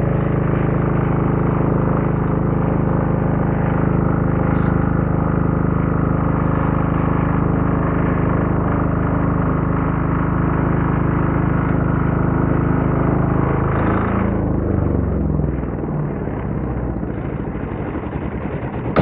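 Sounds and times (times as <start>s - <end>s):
diesel generator engine running: 0.0s - 19.0s
sharp clatter: 16.6s - 19.0s.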